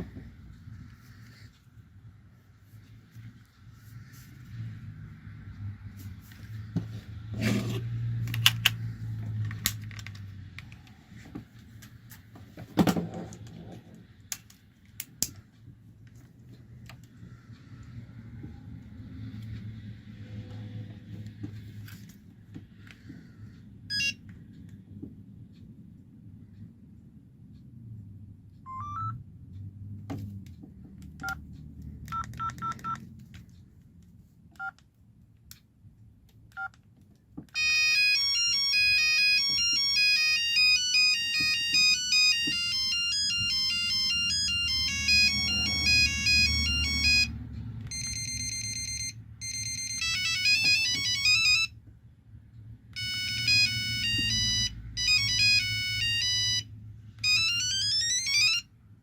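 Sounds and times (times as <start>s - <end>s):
electronic ringtone melodies: 23.9s - 24.2s, 28.7s - 29.2s, 37.6s - 51.8s, 53.0s - 58.7s
phone key beeps: 23.9s - 24.2s, 28.7s - 29.2s, 32.1s - 33.0s, 37.6s - 47.3s, 47.9s - 51.7s, 53.0s - 56.6s, 57.2s - 58.6s.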